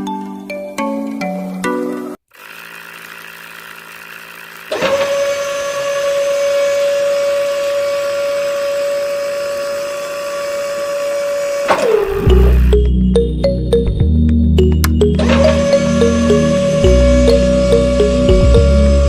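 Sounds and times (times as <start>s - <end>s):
music: 0.0s - 2.2s, 12.2s - 19.0s
small electric motor whining: 2.3s - 12.7s, 15.2s - 19.0s.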